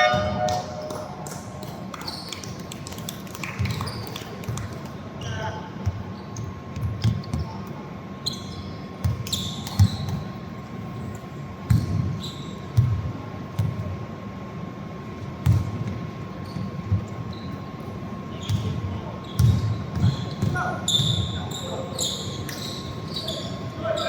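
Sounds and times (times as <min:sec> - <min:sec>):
basketball bouncing on court: 0:05.8 - 0:07.6, 0:09.0 - 0:10.3, 0:11.6 - 0:13.9, 0:15.4 - 0:17.1, 0:18.4 - 0:21.4
shoes squeaking: 0:18.4 - 0:24.0.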